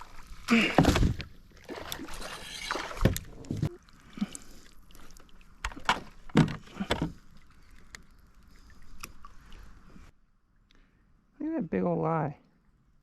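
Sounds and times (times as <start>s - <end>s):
water splashing around boat: 0.0s - 10.1s.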